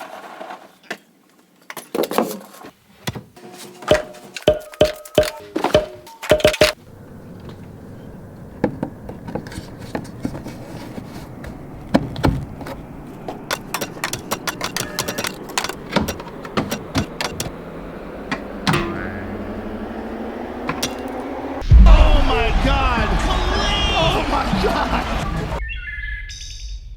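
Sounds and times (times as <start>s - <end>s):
hard objects clicking and knocking: 3.9s - 6.8s, 11.9s - 17.6s
steady tone: 16.8s - 24.1s.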